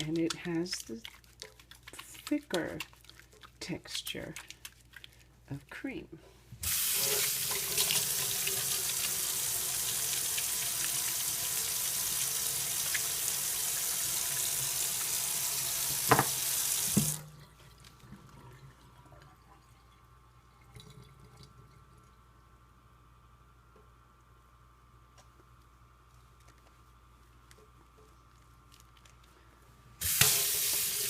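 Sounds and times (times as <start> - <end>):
tap water running into sink: 6.6 - 17.3, 30.0 - 31.0.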